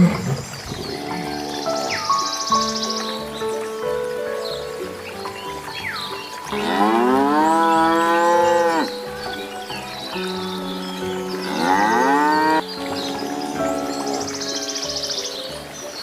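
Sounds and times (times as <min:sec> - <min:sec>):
cow mooing: 0:06.5 - 0:08.9, 0:11.5 - 0:12.6.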